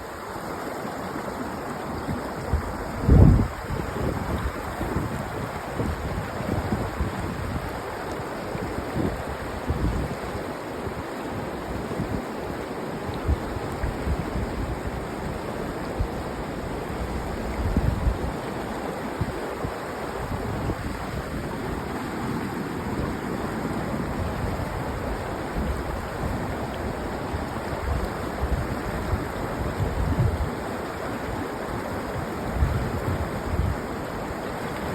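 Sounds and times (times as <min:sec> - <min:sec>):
river water rushing: 0:00.0 - 0:34.9
wind buffeting microphone: 0:02.4 - 0:07.9, 0:13.3 - 0:18.4.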